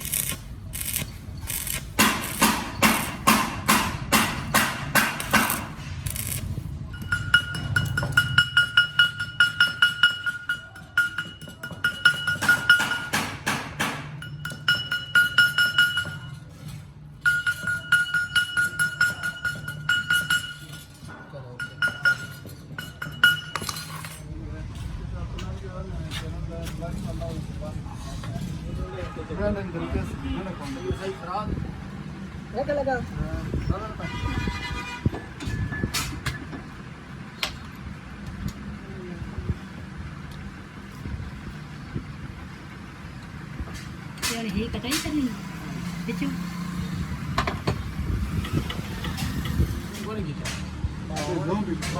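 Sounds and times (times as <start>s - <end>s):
sharp clinks with ringing: 6.9s - 13.2s, 14.1s - 16.5s, 17.2s - 24.3s.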